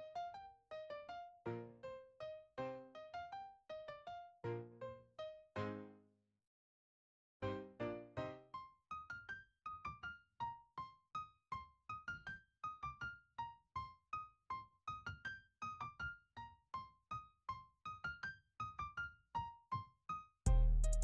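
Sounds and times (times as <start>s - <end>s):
light keyboard melody: 0.0s - 6.0s, 7.4s - 8.8s, 20.5s - 21.0s.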